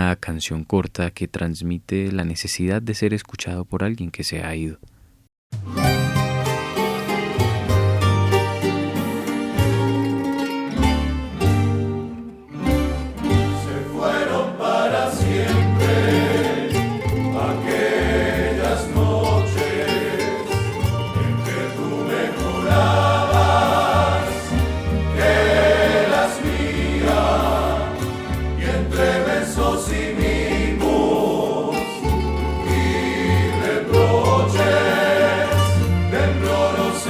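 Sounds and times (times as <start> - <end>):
plucked-string ensemble: 5.6 - 37.0
voices singing together: 13.3 - 37.0.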